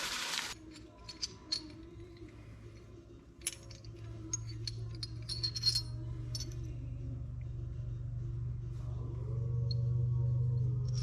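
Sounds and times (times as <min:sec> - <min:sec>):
metal engine parts clinking: 0:00.6 - 0:07.0, 0:10.5 - 0:11.0
steady low hum: 0:01.7 - 0:11.0.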